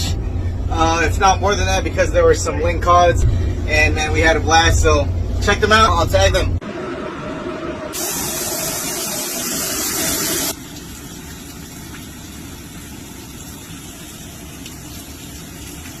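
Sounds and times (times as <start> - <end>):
water wash: 6.6 - 16.0
loud hiss: 7.9 - 10.5.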